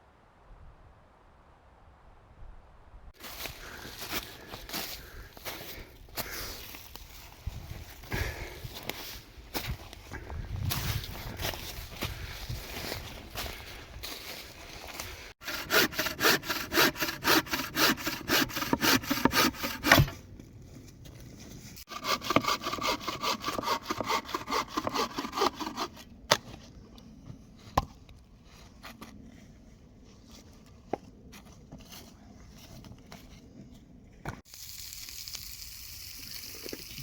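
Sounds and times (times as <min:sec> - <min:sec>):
hand saw cutting wood: 0:15.4 - 0:20.2, 0:21.8 - 0:26.1.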